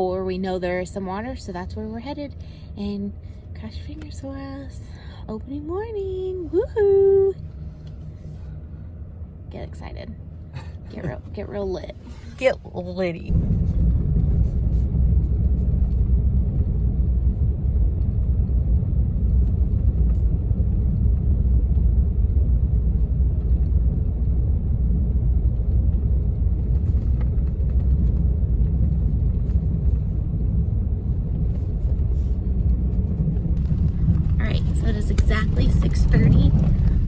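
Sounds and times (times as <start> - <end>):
truck driving rumble: 0.0 - 37.0.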